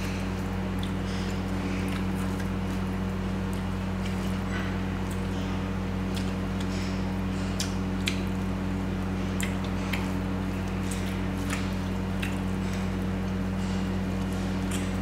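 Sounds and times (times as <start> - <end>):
wet chewing and mouth smacks: 0.3 - 15.0
low hum: 10.5 - 15.0.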